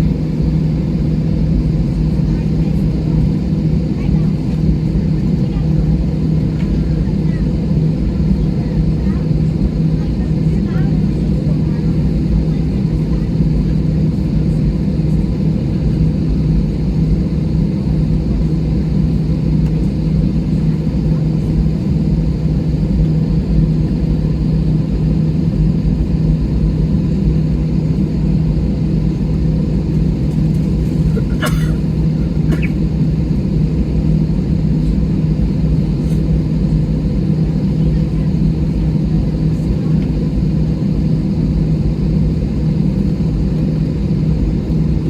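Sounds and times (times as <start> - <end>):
airliner engines idling: 0.0 - 45.0
cabin air running: 0.0 - 45.0.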